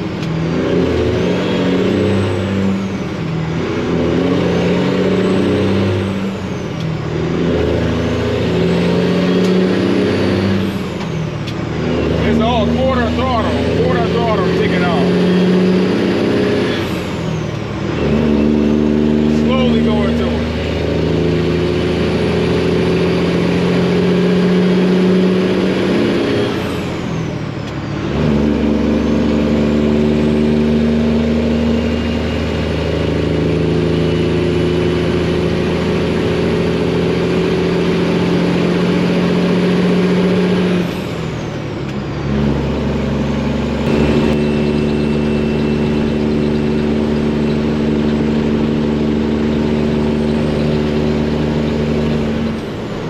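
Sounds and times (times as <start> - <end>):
diesel truck engine pulling: 0.0 - 53.0
turbo whistle: 43.9 - 46.8.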